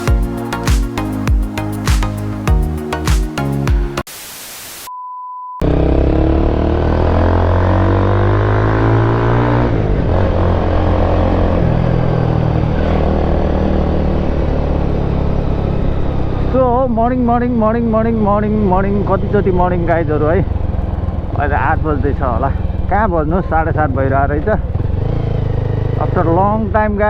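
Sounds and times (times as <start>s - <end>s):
motorcycle engine revving: 5.6s - 27.0s.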